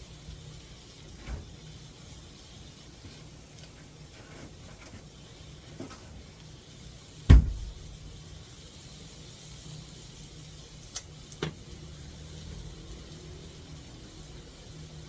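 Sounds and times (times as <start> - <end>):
sharp low knock: 7.3 - 7.8.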